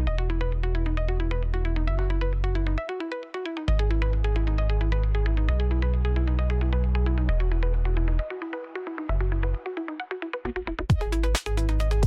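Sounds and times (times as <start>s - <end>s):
steady synth bass: 0.0s - 2.9s, 3.7s - 8.3s, 9.0s - 9.6s, 10.5s - 12.0s.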